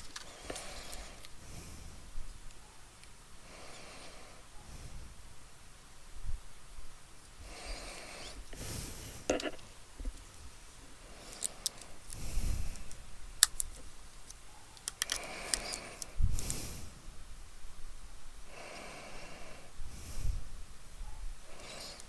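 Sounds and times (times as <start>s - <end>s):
small parts clicking and tapping: 11.2s - 12.2s, 12.8s - 16.6s.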